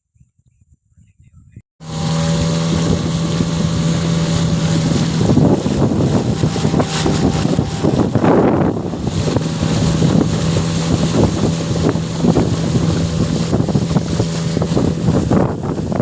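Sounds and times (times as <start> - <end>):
wind buffeting microphone: 0.1 - 16.0
boat motor running: 1.8 - 16.0.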